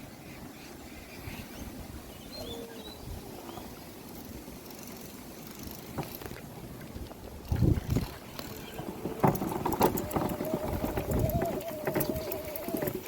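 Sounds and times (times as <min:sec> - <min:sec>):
go-kart low rumble: 0:07.0 - 0:13.0.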